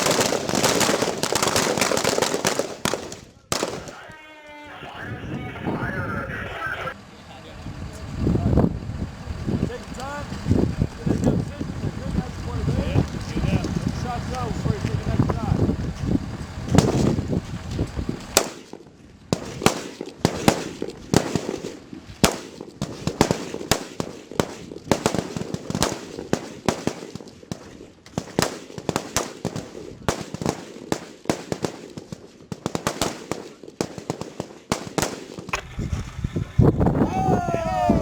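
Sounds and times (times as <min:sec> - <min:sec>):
rifle shots: 0:00.0 - 0:04.2, 0:16.7 - 0:17.2, 0:18.2 - 0:36.5.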